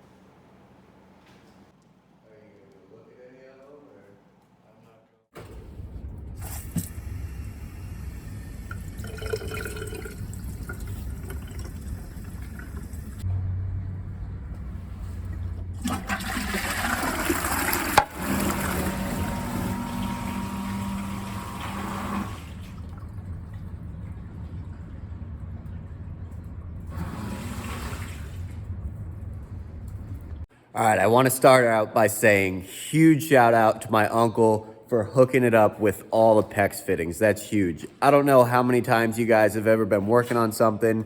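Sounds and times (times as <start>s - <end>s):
steady low hum: 0.0s - 16.0s, 22.3s - 31.2s
toilet flushing water rush: 6.4s - 13.2s, 15.3s - 30.4s.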